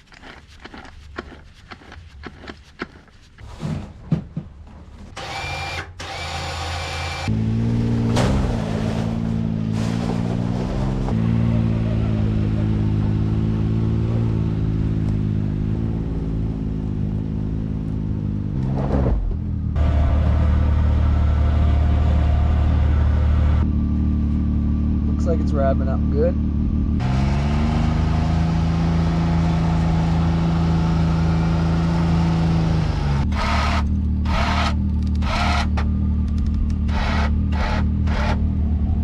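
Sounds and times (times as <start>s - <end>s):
winch winding rope: 0.0s - 3.4s
vehicle engine running: 7.0s - 39.0s.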